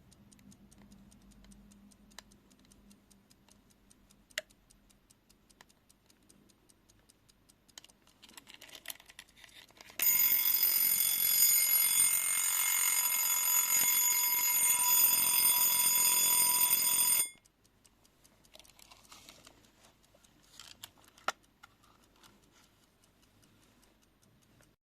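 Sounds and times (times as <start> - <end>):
clock ticking: 0.0 - 24.8
alarm clock ringing: 10.0 - 17.4.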